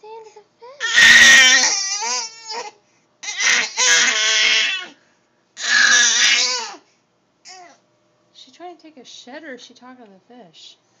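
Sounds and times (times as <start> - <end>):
pet animal whining cries: 0.8 - 5.0, 5.6 - 6.8.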